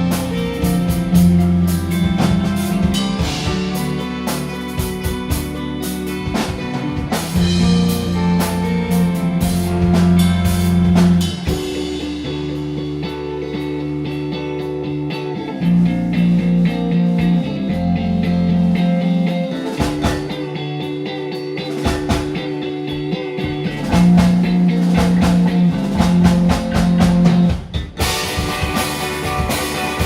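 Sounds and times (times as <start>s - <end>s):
rock band playing live: 0.0s - 30.0s.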